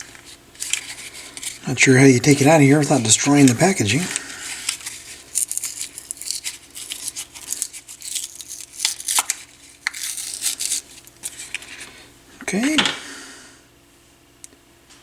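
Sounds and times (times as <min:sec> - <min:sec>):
packaging tearing and crinkling: 0:00.0 - 0:11.8.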